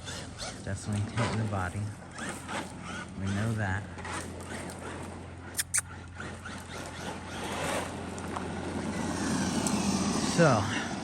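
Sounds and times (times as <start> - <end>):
sharp clicks: 5.6 - 5.8
electric motor whine: 8.6 - 11.0.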